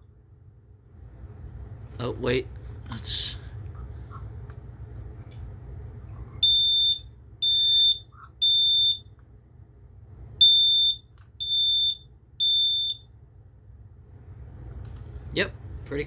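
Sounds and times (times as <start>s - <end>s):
smoke alarm beeping: 6.4s - 9.1s, 10.4s - 13.2s.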